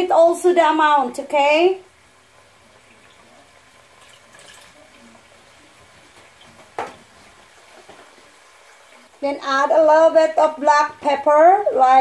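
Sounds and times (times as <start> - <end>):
liquid trickling into a pan: 2.8 - 5.5.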